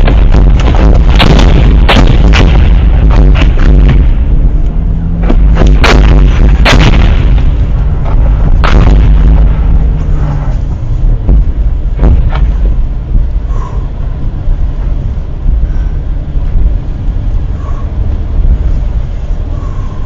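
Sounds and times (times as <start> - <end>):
sharp thuds: 0.0 - 14.0
vehicle engine rumbling: 0.0 - 20.0.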